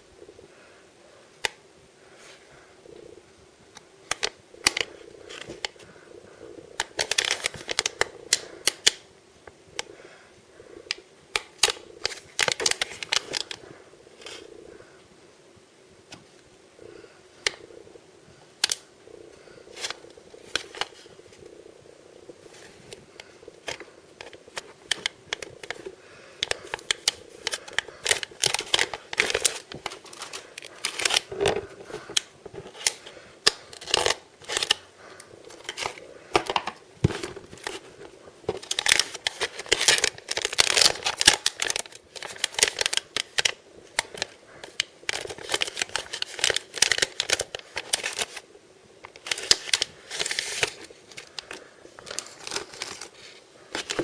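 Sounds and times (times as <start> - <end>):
packaging being torn and crinkled: 11.4 - 13.6, 23.6 - 34.8, 35.5 - 48.4, 49.1 - 54.0.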